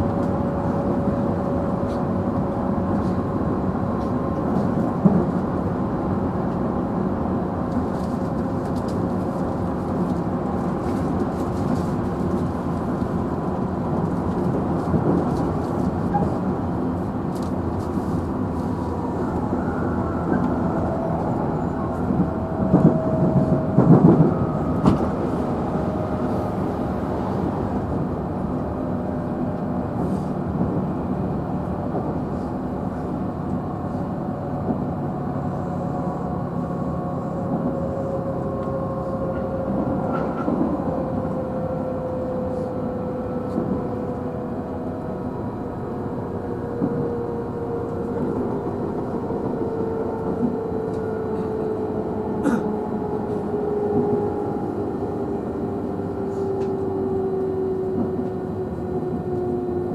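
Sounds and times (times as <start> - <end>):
train rolling noise: 0.0 - 59.9.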